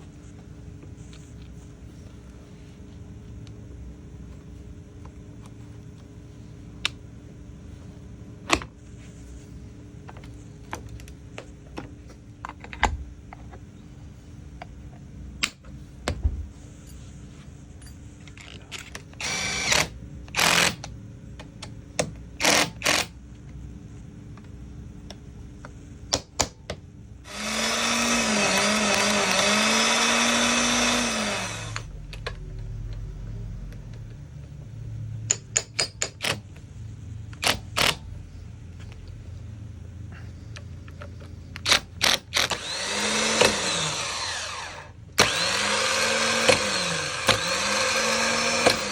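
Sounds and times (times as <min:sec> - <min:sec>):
electric motor running: 0:19.2 - 0:20.8, 0:27.3 - 0:31.9, 0:41.6 - 0:48.9.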